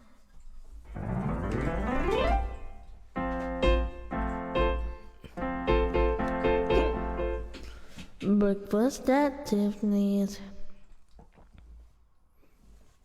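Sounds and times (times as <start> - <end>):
piano glissando: 0.9 - 7.7
piano chords: 0.9 - 7.9.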